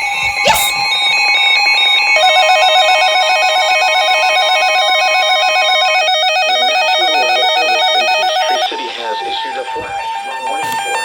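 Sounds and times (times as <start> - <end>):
fast warbling alarm tone: 0.0 - 11.0
steady alert tones: 0.3 - 0.9, 2.2 - 8.7.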